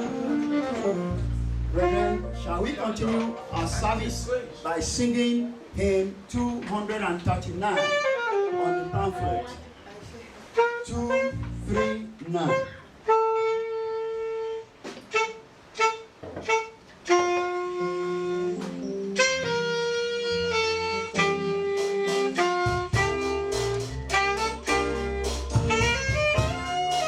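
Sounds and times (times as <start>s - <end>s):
wind instrument playing held notes: 0.0s - 4.7s, 7.6s - 9.6s, 10.6s - 27.0s
fuller lower accompaniment: 0.0s - 9.6s, 10.7s - 12.6s, 17.1s - 27.0s.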